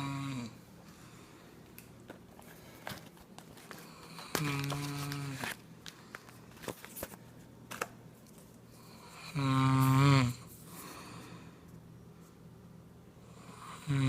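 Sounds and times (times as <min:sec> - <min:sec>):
person snoring: 0:00.0 - 0:00.6, 0:08.9 - 0:11.4, 0:13.2 - 0:14.0
person breathing: 0:00.8 - 0:01.7, 0:02.4 - 0:03.1, 0:10.4 - 0:11.7.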